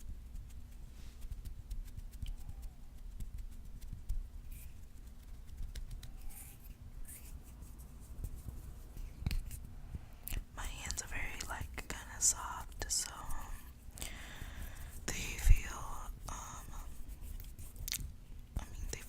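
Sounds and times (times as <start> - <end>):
fingers scratching skin: 0.0 - 9.7, 10.3 - 19.0
soft breaths: 8.8 - 17.2.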